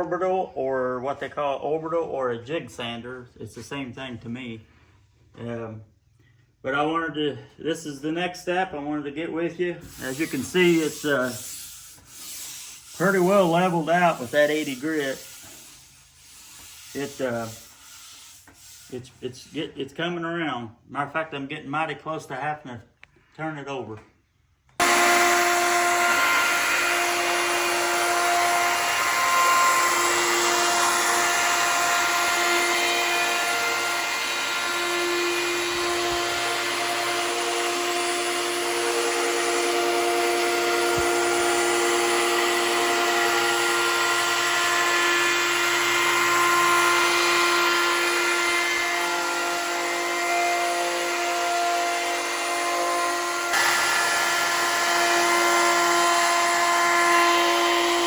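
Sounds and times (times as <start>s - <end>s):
belt sander whining and hissing: 9.8s - 19.6s, 24.8s - 58.0s.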